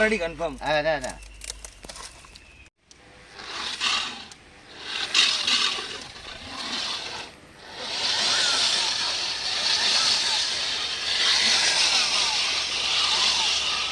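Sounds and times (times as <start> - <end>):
core drill grinding concrete: 3.3 - 13.9.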